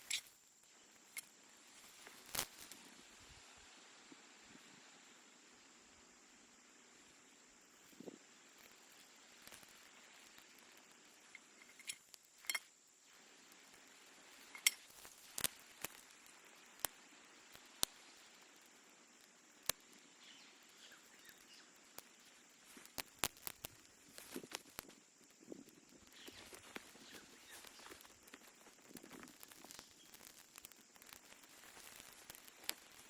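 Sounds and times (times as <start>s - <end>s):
faint high hiss: 0.0s - 33.0s
sharp clicks and light taps: 14.4s - 18.1s, 21.3s - 33.0s.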